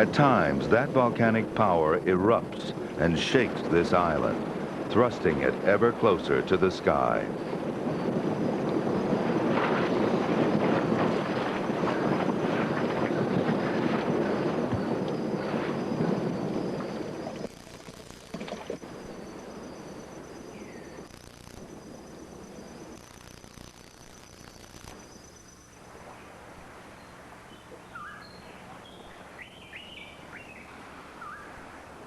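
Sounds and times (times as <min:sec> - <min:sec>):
volcanic eruption rumbling: 0:00.0 - 0:17.6
sharp crackles: 0:11.2 - 0:25.8.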